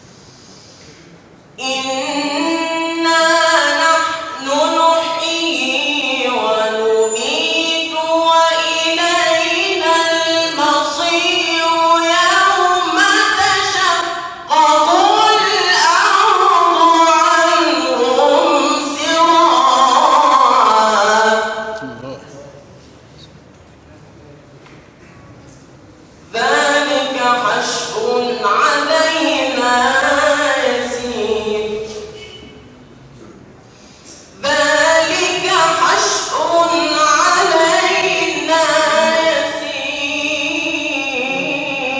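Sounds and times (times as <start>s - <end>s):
melodic recitation by one voice: 1.6s - 22.3s, 26.3s - 32.2s, 34.4s - 41.9s
person chanting recitation: 16.8s - 22.5s, 34.4s - 41.9s.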